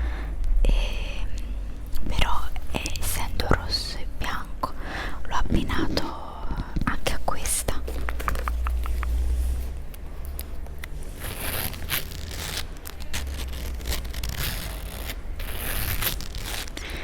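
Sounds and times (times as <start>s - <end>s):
steady low hum: 0.0s - 17.0s
leather wallet scratching and clicking: 7.7s - 16.9s.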